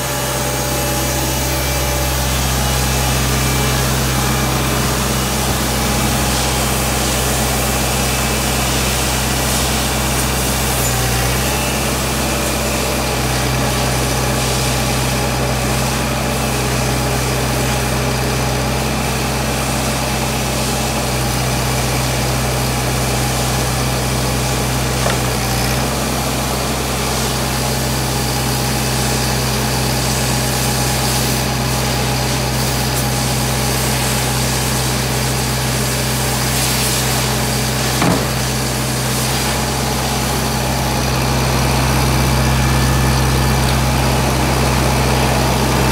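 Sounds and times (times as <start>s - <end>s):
paver engine running: 0.0s - 45.9s.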